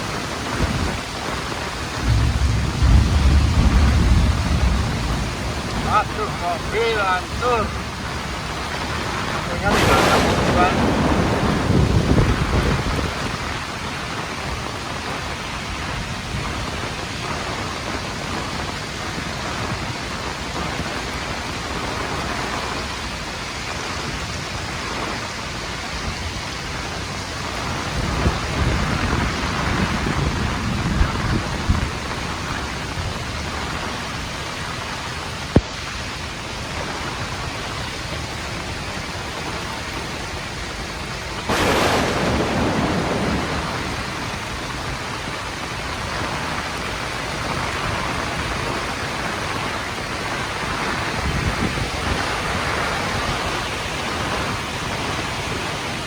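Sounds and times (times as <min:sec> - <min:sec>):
heavy rain pouring: 0:00.0 - 0:56.0
low rumbling: 0:01.8 - 0:13.4.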